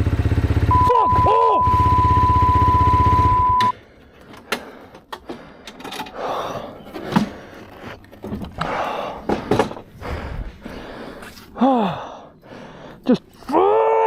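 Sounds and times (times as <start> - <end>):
motorcycle engine running: 0.0 - 3.7.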